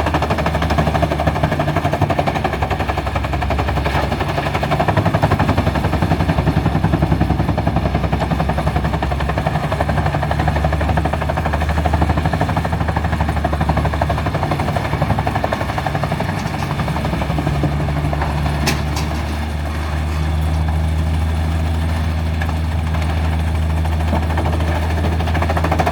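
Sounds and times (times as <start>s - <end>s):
heavy diesel machinery rattling: 0.0s - 25.9s.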